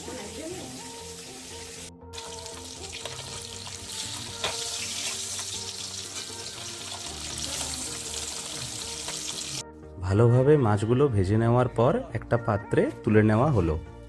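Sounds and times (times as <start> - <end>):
fish sizzling in hot oil: 0.0 - 9.6
background music: 0.0 - 14.0.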